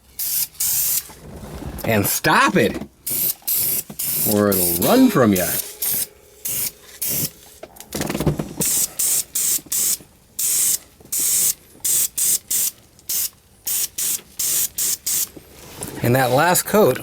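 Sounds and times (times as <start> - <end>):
aerosol spray can hissing bursts: 0.2 - 1.1, 3.0 - 7.3, 8.6 - 15.3.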